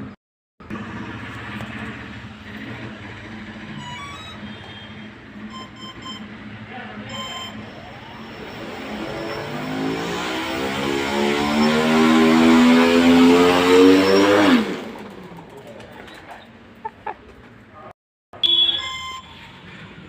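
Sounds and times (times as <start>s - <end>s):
electronic beeps: 3.8s - 6.4s, 7.0s - 9.8s, 18.4s - 19.6s
rising electronic tones: 7.1s - 14.8s.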